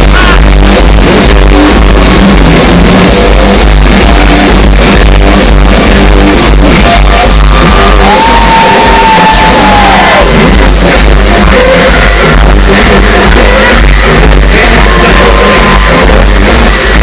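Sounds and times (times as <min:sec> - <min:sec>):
loud live concert music: 0:00.0 - 0:17.0
crowd shouting along: 0:06.9 - 0:10.5.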